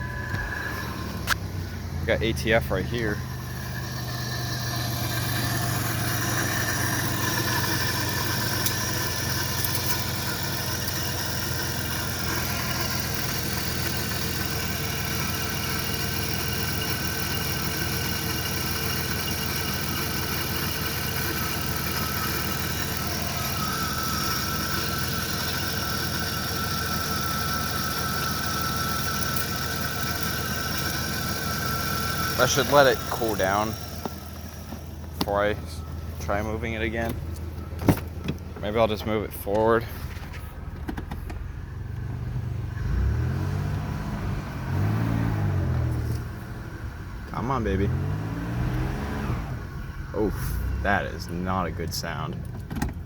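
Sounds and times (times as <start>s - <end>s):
high-pitched squeal: 0.0s - 13.3s, 21.0s - 37.7s
engine idling: 0.0s - 43.3s, 49.4s - 53.0s.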